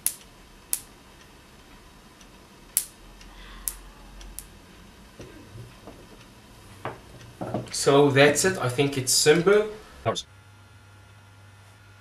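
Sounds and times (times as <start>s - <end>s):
electric sparks cracking: 0.0s - 1.0s, 2.7s - 3.0s, 3.6s - 4.5s.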